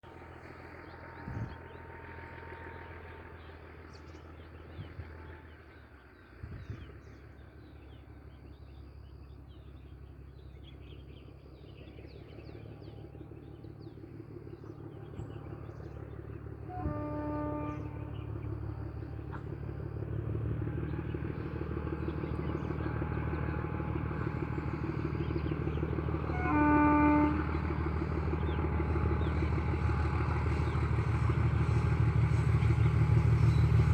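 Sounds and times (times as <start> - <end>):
diesel locomotive engine hum: 0.0 - 33.9
locomotive horn blast: 16.6 - 18.7, 26.2 - 33.9.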